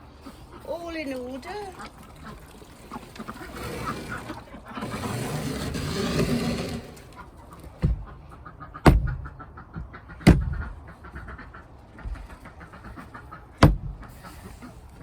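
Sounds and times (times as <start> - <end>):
rustling and scraping: 0.2 - 8.3, 11.8 - 15.0
sharp knocks: 7.8 - 8.2, 8.8 - 10.7, 13.6 - 14.1.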